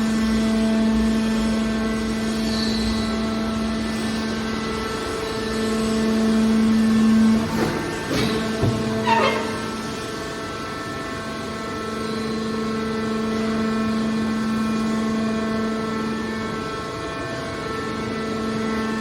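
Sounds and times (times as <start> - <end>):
short knocks: 7.4 - 9.9.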